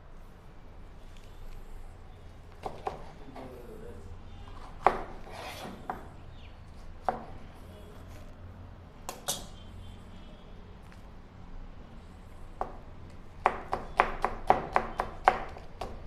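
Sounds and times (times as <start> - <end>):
knife blade scraping: 4.6 - 5.9.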